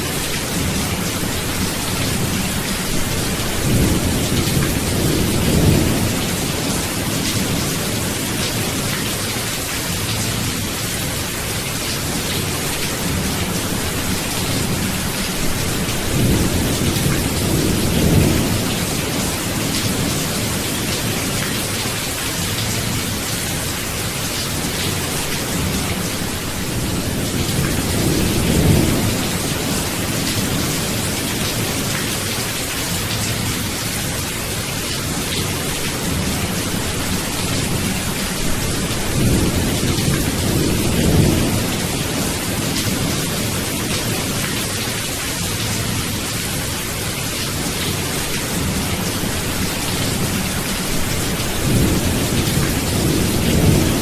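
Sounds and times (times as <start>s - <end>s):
heavy rain: 0.0s - 54.0s.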